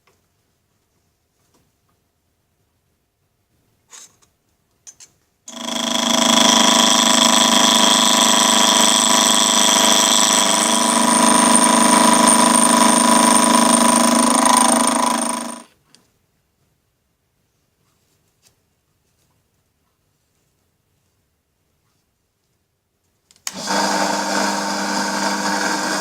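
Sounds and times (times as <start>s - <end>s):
power tool whining: 5.5s - 15.7s, 23.4s - 26.0s.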